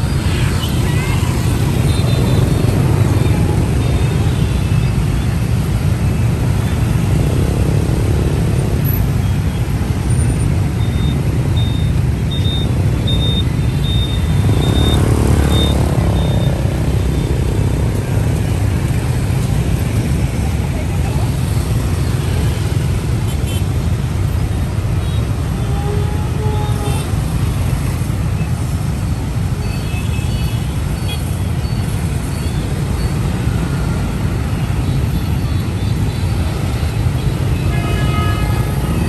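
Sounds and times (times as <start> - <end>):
traffic engine rumble: 0.0 - 39.0
vehicle passing: 14.1 - 22.5.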